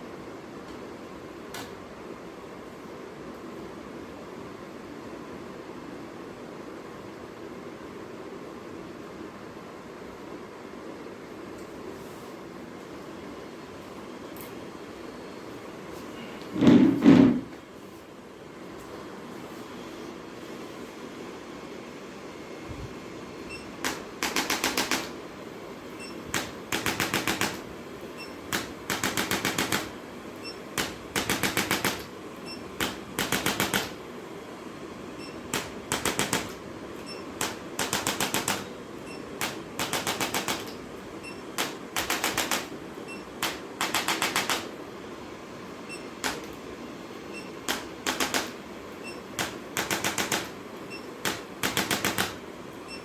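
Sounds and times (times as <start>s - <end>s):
percussion device rapid taps: 23.8s - 25.1s, 26.4s - 27.6s, 28.5s - 29.9s, 30.8s - 32.0s, 32.8s - 33.9s, 35.5s - 36.5s, 37.4s - 38.7s, 39.4s - 40.7s, 41.6s - 42.7s, 43.4s - 44.7s, 47.7s - 48.5s, 49.4s - 50.5s, 51.2s - 52.4s.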